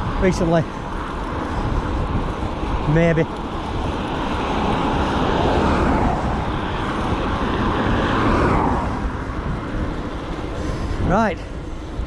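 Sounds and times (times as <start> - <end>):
vehicle passing on road: 0.0 - 12.0
wind rumble on microphone: 0.0 - 12.0.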